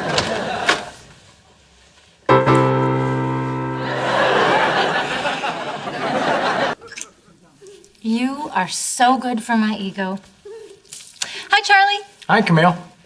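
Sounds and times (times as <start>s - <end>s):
piano chord ringing: 2.3s - 5.4s
dense crowd-like noise: 3.6s - 7.8s.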